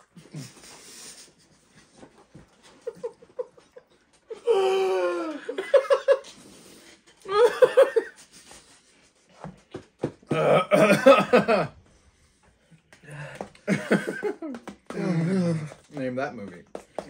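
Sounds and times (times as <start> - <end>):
people laughing: 5.3 - 6.4, 7.3 - 8.5, 13.6 - 15.8.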